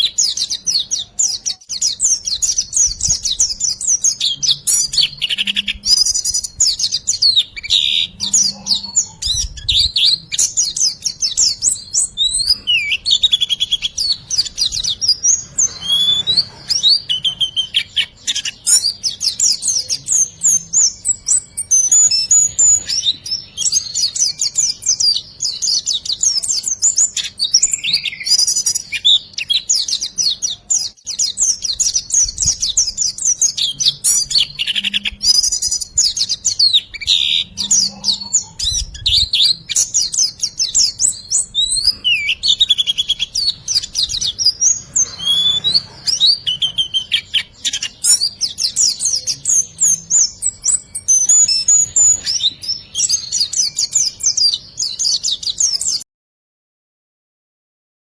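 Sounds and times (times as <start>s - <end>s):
bird twittering song: 0.0s - 56.0s.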